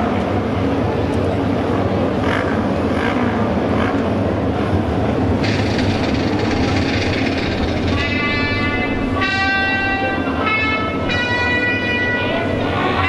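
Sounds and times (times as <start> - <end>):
racing motorcycles engine drone: 1.1 - 9.2.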